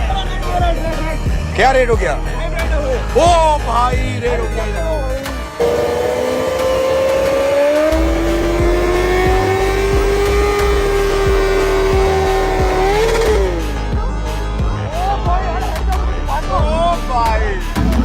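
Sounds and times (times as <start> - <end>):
music with a steady beat: 0.0 - 18.0
motorcycle engine revving high: 5.4 - 13.8.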